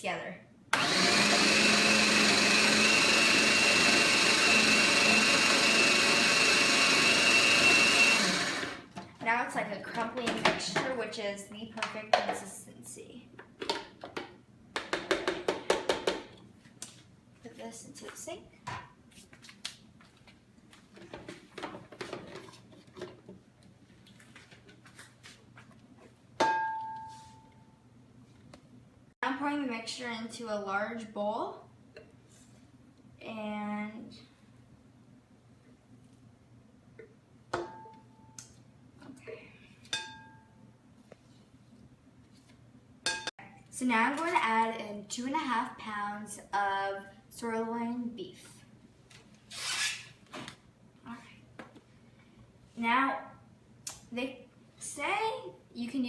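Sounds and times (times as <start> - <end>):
blender motor whine: 0.7 - 8.9.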